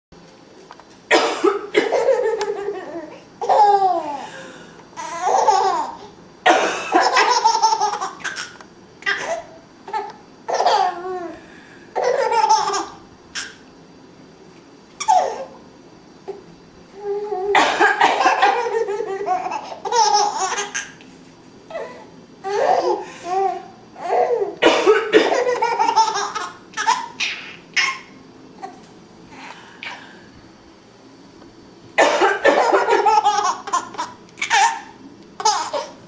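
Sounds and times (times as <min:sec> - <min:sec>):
woman coughing: 0:01.1 - 0:02.0, 0:06.5 - 0:07.2, 0:17.6 - 0:18.7, 0:24.6 - 0:25.5, 0:32.0 - 0:33.1
baby laughing: 0:01.9 - 0:04.2, 0:05.0 - 0:06.1, 0:07.0 - 0:11.3, 0:12.0 - 0:13.6, 0:15.0 - 0:15.5, 0:18.0 - 0:21.0, 0:25.3 - 0:28.8, 0:32.4 - 0:36.0.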